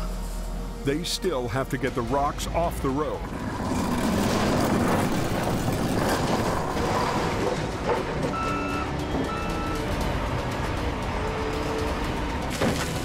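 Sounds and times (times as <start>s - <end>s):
diesel machinery rumble: 0.0s - 13.0s
reversing alarm beeping: 8.2s - 10.0s.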